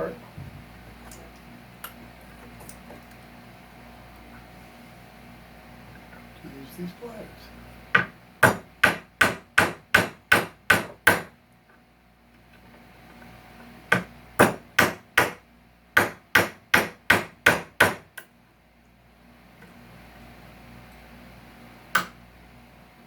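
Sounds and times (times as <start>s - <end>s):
hammer tapping on wood: 8.0s - 11.3s, 13.9s - 15.4s, 16.0s - 18.0s, 22.0s - 22.2s.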